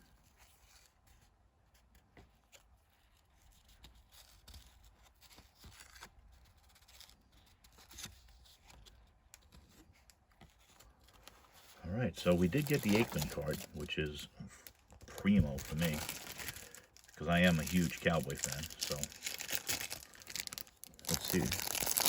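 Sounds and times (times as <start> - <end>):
trading cards rustling: 6.7 - 22.0.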